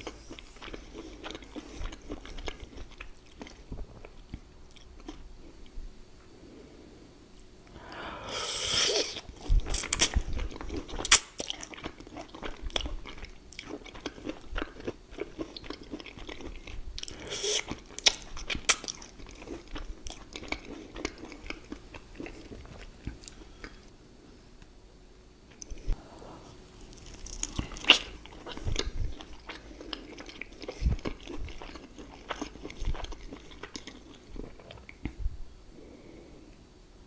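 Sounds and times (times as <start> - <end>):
biting and chewing crunches: 26.8 - 35.2.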